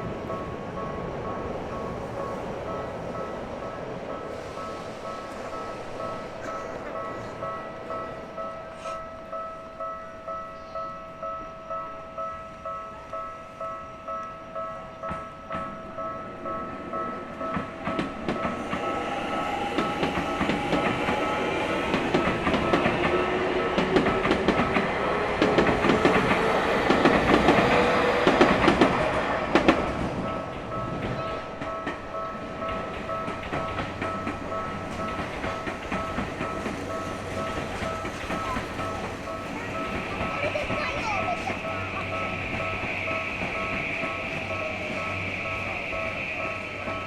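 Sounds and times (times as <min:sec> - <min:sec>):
level-crossing alarm bell: 0:00.0 - 0:47.0
train wheels clattering: 0:15.0 - 0:47.0.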